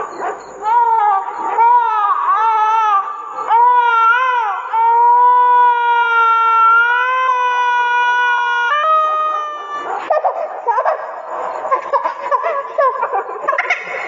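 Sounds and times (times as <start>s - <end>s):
high-pitched howling wail: 0.6s - 10.1s.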